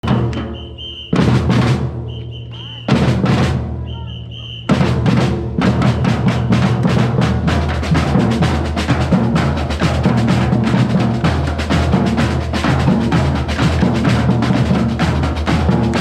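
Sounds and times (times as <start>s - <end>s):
bass drums and snares playing: 4.7s - 16.0s.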